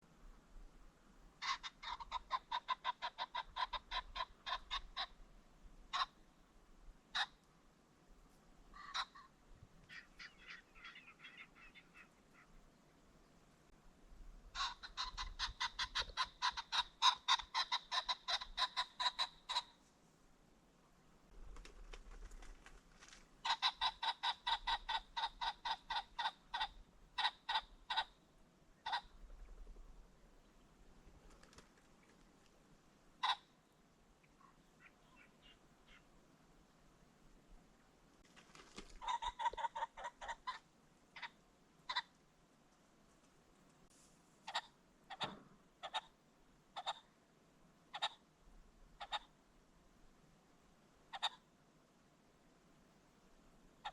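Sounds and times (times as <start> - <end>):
pheasant clucking calls: 1.4 - 5.2, 5.9 - 6.2, 7.1 - 7.5, 8.7 - 12.8, 14.5 - 19.8, 21.4 - 32.5, 33.2 - 33.6, 34.2 - 36.2, 38.4 - 42.2, 44.4 - 47.2, 47.9 - 48.3, 49.0 - 49.4, 51.1 - 51.5.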